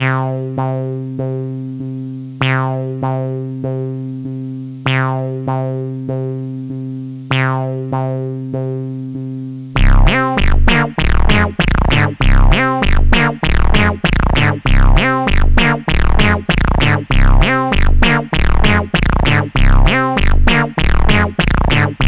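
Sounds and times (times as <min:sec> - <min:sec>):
synthesizer keyboard notes: 0:00.0 - 0:06.5, 0:07.3 - 0:08.8, 0:09.8 - 0:22.0
steady low tone: 0:00.0 - 0:22.0
electronic beat with drums: 0:04.8 - 0:06.4, 0:07.3 - 0:08.3, 0:09.8 - 0:22.0.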